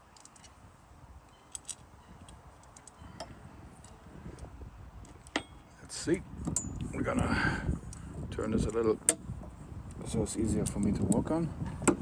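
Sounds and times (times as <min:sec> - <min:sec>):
metal hardware clicking and tapping: 0:01.4 - 0:05.6, 0:06.4 - 0:07.0.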